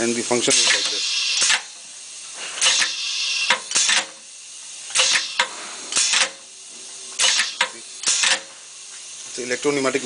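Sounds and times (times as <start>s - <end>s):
pneumatic air hiss bursts: 0.1s - 9.2s
sharp pneumatic click: 0.4s - 1.8s, 2.4s - 4.2s, 4.9s - 6.5s, 7.2s - 8.6s.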